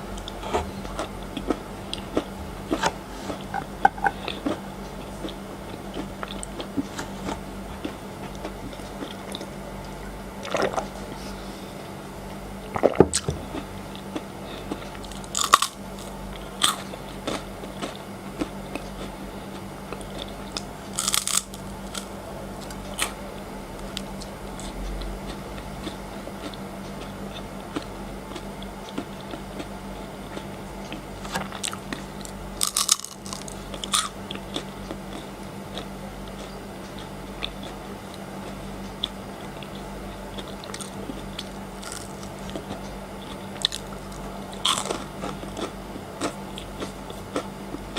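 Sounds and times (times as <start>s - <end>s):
soft chewing clicks: 0.2s - 10.9s, 13.1s - 23.2s, 23.8s - 47.9s
chocolate crunching bites: 15.0s - 18.0s, 20.0s - 23.2s, 31.6s - 34.2s, 41.8s - 42.7s, 43.6s - 47.5s.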